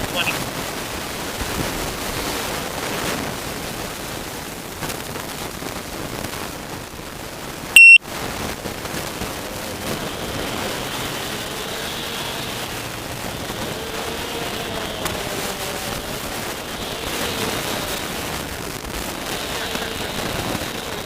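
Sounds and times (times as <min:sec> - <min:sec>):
short loud electronic beep: 0:07.8 - 0:08.0.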